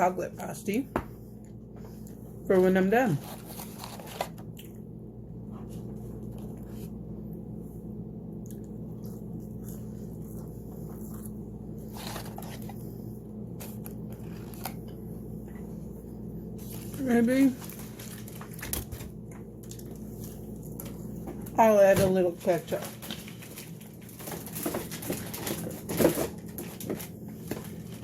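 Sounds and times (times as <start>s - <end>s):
low room hum: 0.0s - 28.0s
person chewing food: 3.3s - 7.6s, 8.3s - 16.9s.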